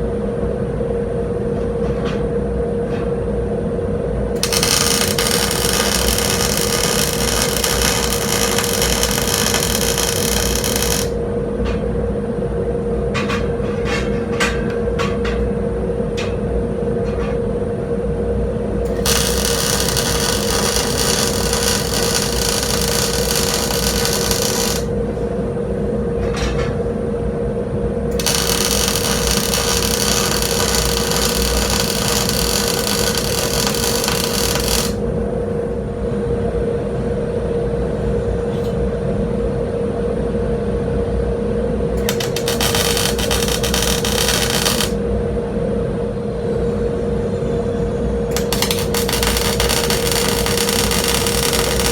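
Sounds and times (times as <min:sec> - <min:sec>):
shop equipment hum: 0:00.0 - 0:39.3, 0:41.1 - 0:51.9
welder arc crackling and hissing: 0:04.4 - 0:11.2, 0:18.9 - 0:25.3, 0:28.1 - 0:35.1, 0:42.0 - 0:45.0, 0:48.3 - 0:51.9.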